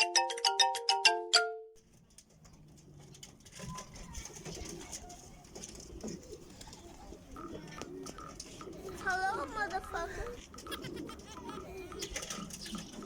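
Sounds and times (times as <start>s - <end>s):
pigeon cooing: 3.0s - 13.0s.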